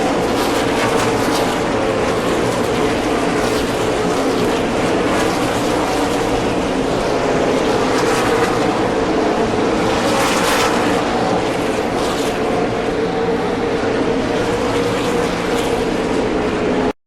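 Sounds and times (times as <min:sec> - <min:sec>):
racing car engines droning: 0:00.0 - 0:16.9.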